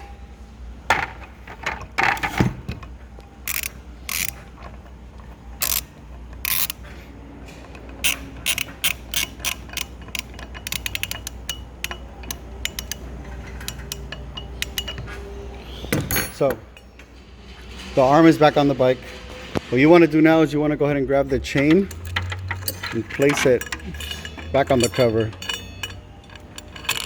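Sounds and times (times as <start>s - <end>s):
ratchet wrench clicking: 3.4s - 4.4s, 5.6s - 6.8s, 7.7s - 15.2s, 21.5s - 27.0s.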